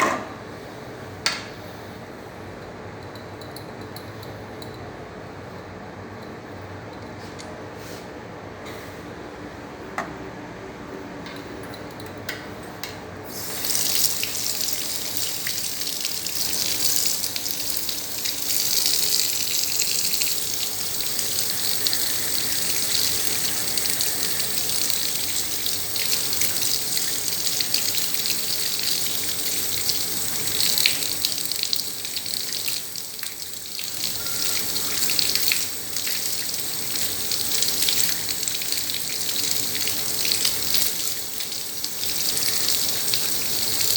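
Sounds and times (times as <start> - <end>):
tap water running into sink: 13.3 - 43.9.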